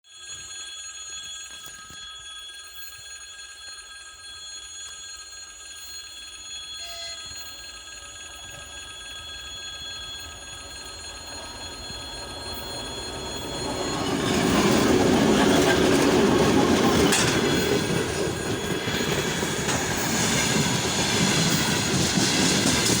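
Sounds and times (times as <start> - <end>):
high-pitched ringing tones: 0.1 - 23.0
diesel locomotive rumble: 10.3 - 23.0.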